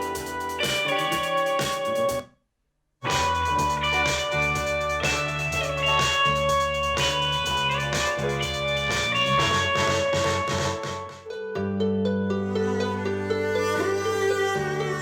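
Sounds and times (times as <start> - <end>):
guitar and drums music on speaker: 0.0 - 2.2, 3.0 - 11.7.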